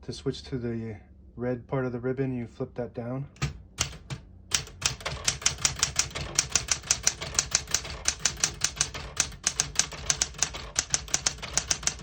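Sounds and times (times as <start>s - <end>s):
manual typewriter typing: 3.4s - 12.0s.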